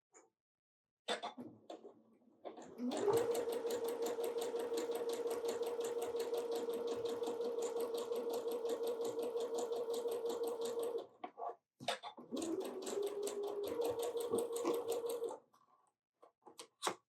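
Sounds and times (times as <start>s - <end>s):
sewing machine stitching: 2.6s - 11.0s, 12.3s - 15.4s.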